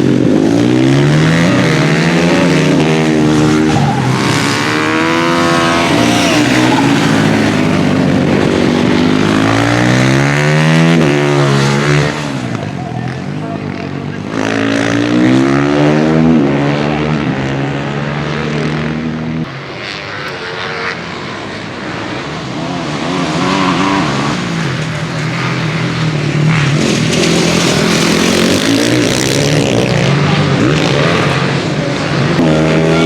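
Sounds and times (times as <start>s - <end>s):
motorbike engines revving: 0.0s - 33.0s.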